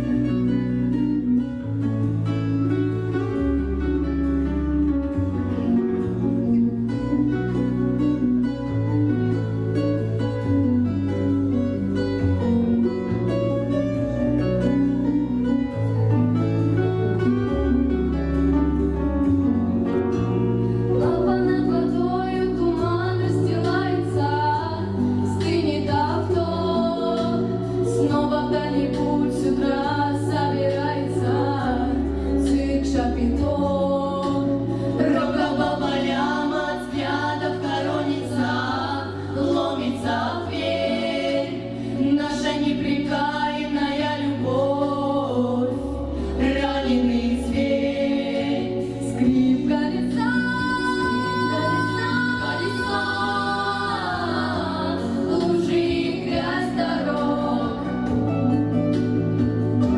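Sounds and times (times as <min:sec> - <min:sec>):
instrumental accompaniment: 0:00.0 - 0:59.9
vocal group singing in harmony: 0:20.4 - 0:59.9.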